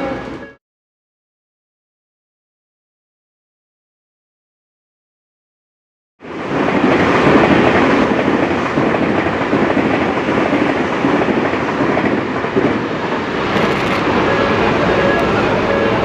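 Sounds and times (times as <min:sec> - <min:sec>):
train wheel and rail noise: 0:00.0 - 0:00.6, 0:06.2 - 0:16.0.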